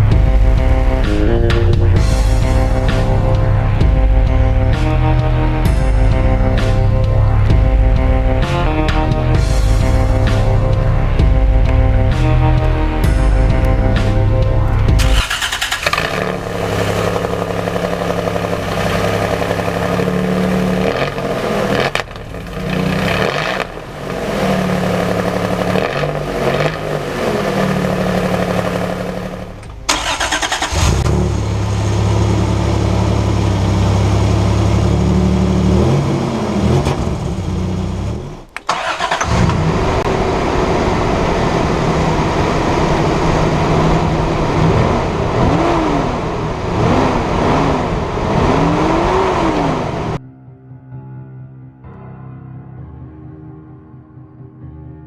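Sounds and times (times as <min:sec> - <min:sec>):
pickup engine revving: 0:12.1 - 0:50.2.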